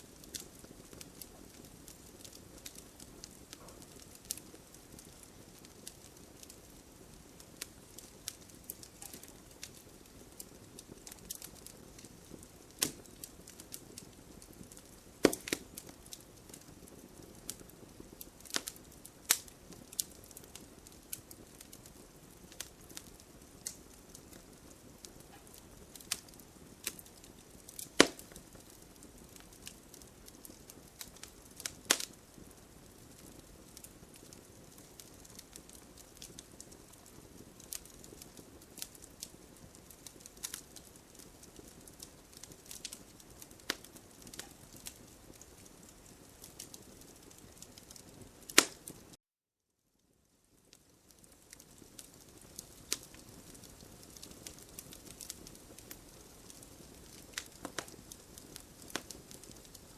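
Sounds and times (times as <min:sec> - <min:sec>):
campfire crackling: 0:00.0 - 0:49.2, 0:50.0 - 0:59.9
loud wood pops: 0:15.2 - 0:15.6, 0:27.9 - 0:28.3, 0:48.6 - 0:48.8.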